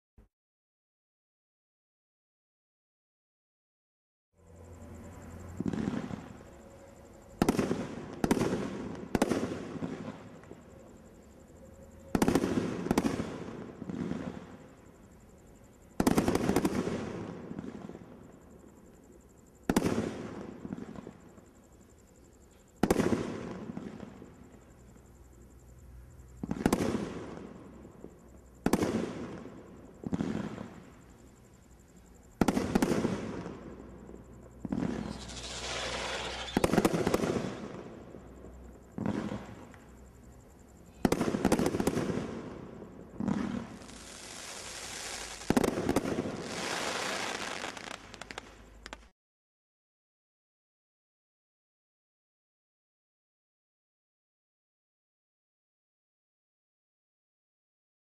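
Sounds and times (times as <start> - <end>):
firework bangs: 5.4 - 10.6, 12.1 - 14.7, 16.0 - 18.0, 19.7 - 21.3, 22.8 - 24.5, 26.4 - 31.3, 32.2 - 40.0, 40.9 - 49.1.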